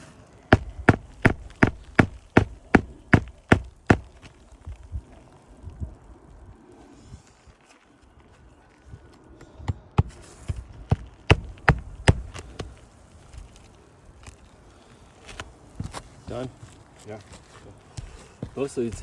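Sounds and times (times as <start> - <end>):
hammer and pry bar knocking: 0.5 - 4.2, 11.3 - 12.4.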